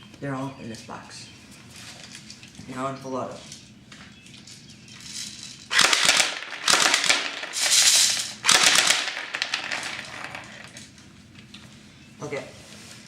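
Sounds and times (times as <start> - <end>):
airsoft gun firing bursts: 5.7 - 9.4.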